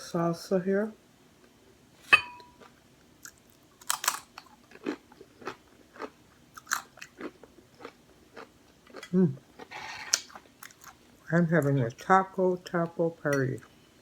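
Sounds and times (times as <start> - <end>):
crunchy chewing: 2.6 - 11.2.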